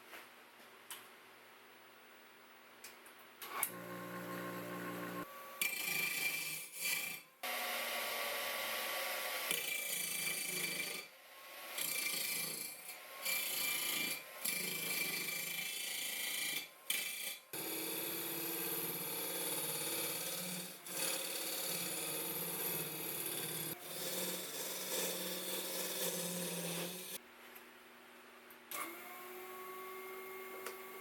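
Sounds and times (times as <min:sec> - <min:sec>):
low motor hum: 0:03.7 - 0:05.2
tool rasping wood: 0:05.2 - 0:08.1, 0:09.2 - 0:27.2.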